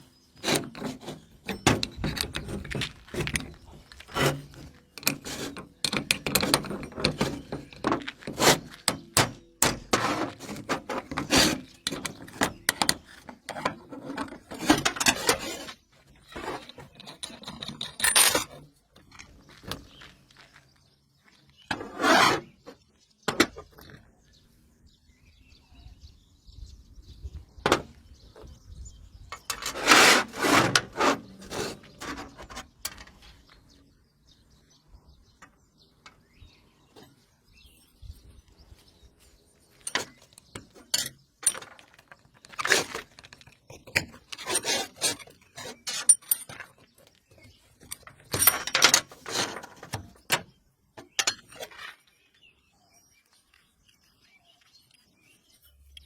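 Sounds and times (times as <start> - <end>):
hand tools and parts handled: 0.0 - 24.3, 27.6 - 28.6, 29.3 - 33.9, 35.3 - 52.4.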